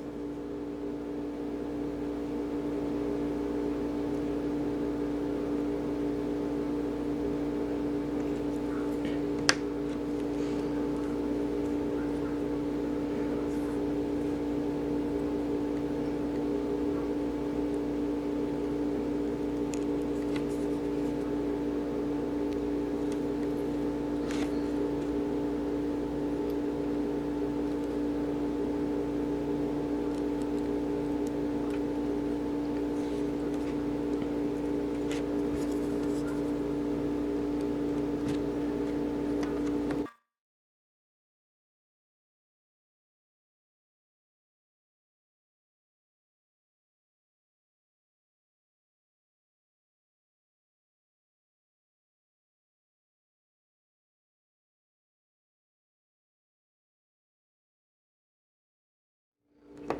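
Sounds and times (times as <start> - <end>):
steady machine hum: 0.0 - 40.1, 59.6 - 59.9.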